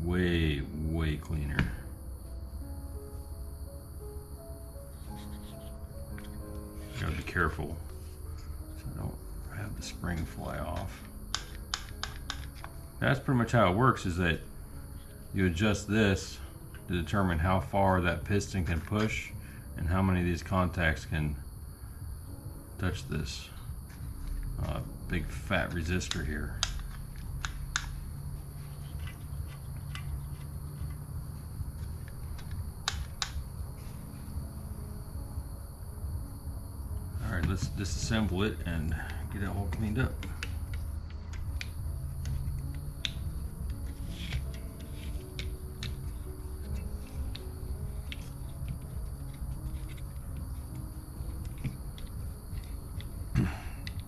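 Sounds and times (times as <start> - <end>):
steady low hum: 0.0 - 54.0
small metal parts and tools clicking: 10.8 - 12.8
small parts clicking: 10.8 - 12.8, 26.0 - 28.0, 28.8 - 31.0, 40.1 - 53.1, 53.8 - 54.0.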